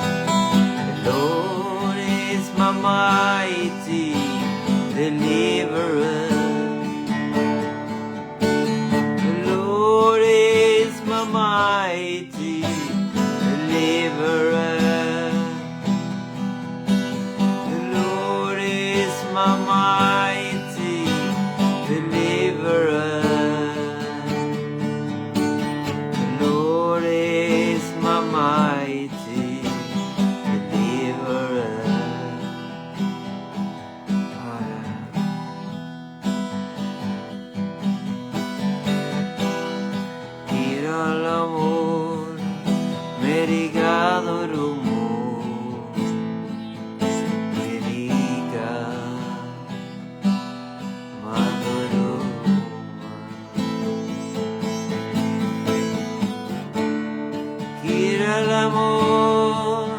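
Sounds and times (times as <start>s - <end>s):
person singing: 0.0s - 7.7s, 8.8s - 16.2s, 17.4s - 25.1s, 25.9s - 32.8s, 34.1s - 35.8s, 40.5s - 46.2s, 47.0s - 50.0s, 51.1s - 56.4s, 57.6s - 59.9s
acoustic guitar strumming chords: 0.0s - 59.9s.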